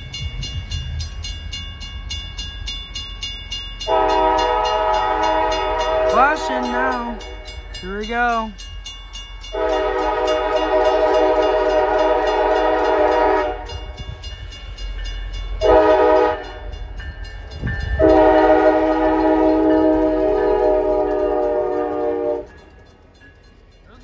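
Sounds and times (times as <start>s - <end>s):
low rumble of passing train: 0.0s - 24.0s
diesel locomotive horn blasts: 3.9s - 7.4s, 9.5s - 13.9s, 15.6s - 16.7s, 17.9s - 22.6s.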